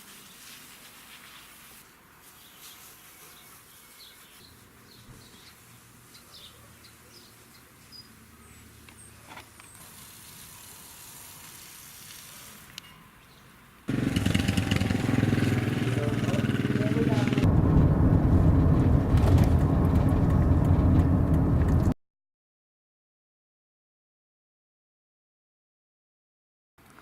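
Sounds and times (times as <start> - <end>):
low steady hum: 13.9 - 21.9
loud low rumble with drone: 13.9 - 22.0.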